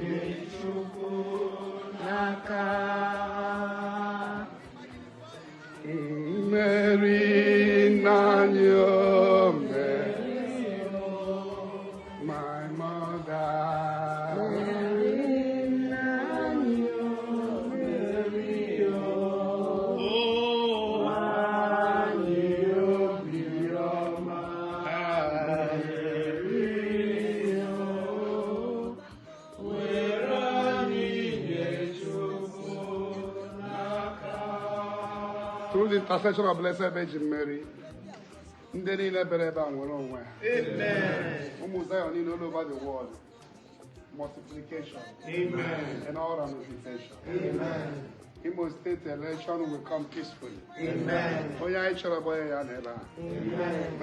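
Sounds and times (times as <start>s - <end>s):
person singing chant-like worship song: 0.0s - 54.0s.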